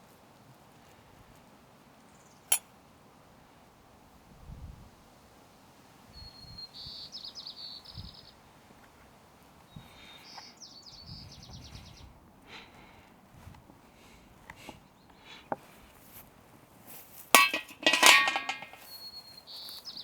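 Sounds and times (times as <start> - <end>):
songbird singing trills: 6.1 - 8.4, 9.7 - 12.2, 18.7 - 20.0.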